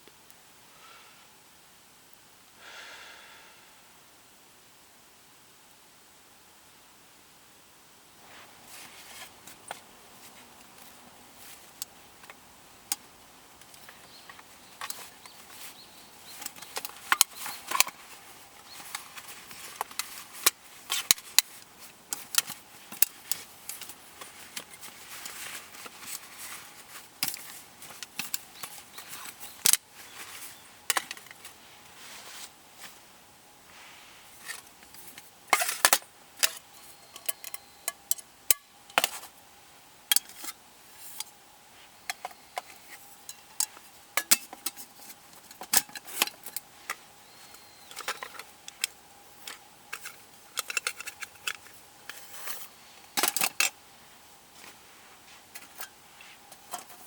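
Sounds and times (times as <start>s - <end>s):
hard objects clicking and clattering: 42.1s - 53.8s.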